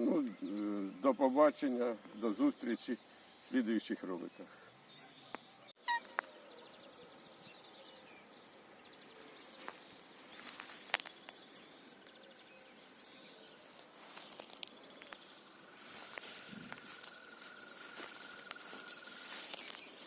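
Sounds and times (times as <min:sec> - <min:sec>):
distant birds trilling: 0:00.0 - 0:20.0
rustling crunching sounds: 0:09.2 - 0:11.4, 0:13.6 - 0:20.0.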